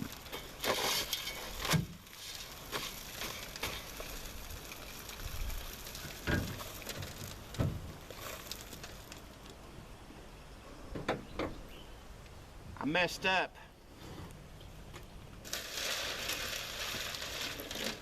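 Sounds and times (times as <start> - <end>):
scraping and crackling: 0.0 - 9.6, 15.4 - 18.0.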